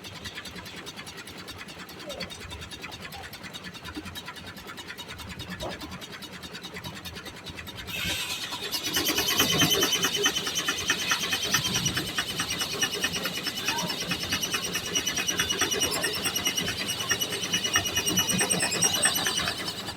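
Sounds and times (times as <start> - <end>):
steam sawmill running: 0.0 - 19.9
saw cutting into log: 7.1 - 19.9.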